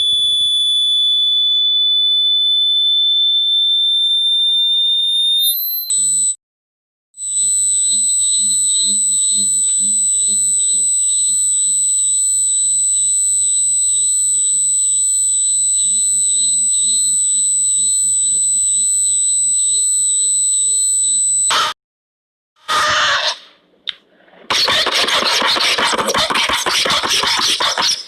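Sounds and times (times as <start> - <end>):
high-pitched electronic alarm tone: 0.0 - 6.4, 7.2 - 21.8.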